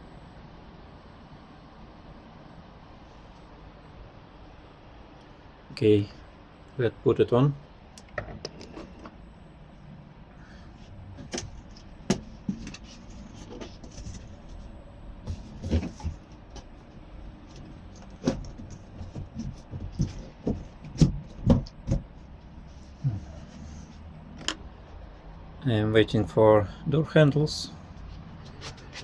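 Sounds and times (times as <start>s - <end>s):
panel door knocking and clunking: 18.3s - 22.2s.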